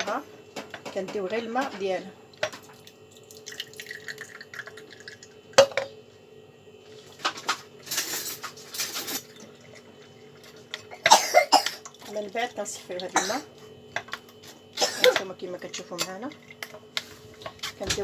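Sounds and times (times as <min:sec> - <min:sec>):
liquid pouring through strainer: 0:02.7 - 0:05.2.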